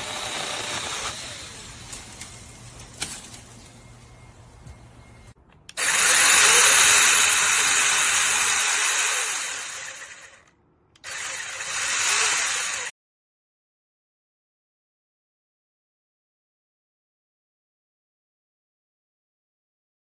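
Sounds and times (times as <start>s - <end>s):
electric mini chainsaw running: 0.0s - 1.9s, 5.8s - 12.9s.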